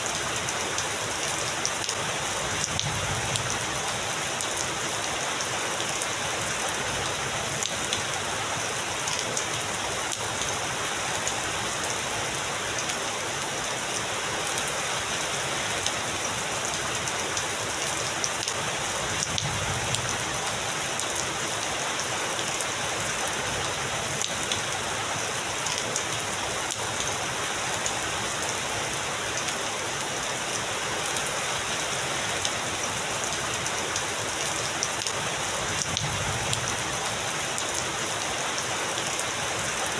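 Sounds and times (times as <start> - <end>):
raindrops ticking close by: 0.1 - 39.9.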